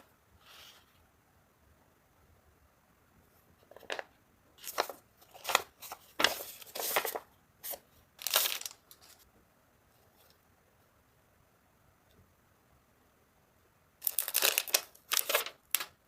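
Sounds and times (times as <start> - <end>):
plastic packaging crinkling and tearing: 8.2 - 9.2, 14.0 - 16.0.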